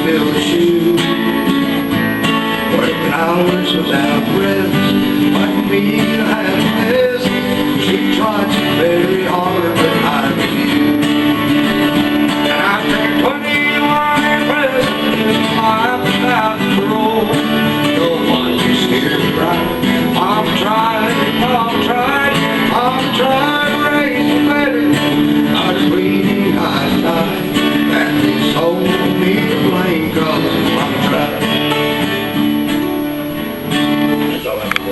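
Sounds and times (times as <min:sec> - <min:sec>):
acoustic guitars strumming: 0:00.0 - 0:34.9.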